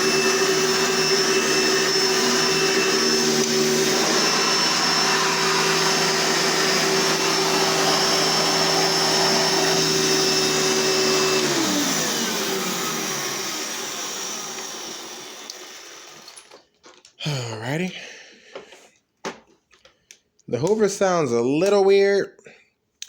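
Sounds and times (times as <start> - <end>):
vacuum cleaner running: 0.0 - 16.5
vacuum motor winding down: 0.0 - 16.5.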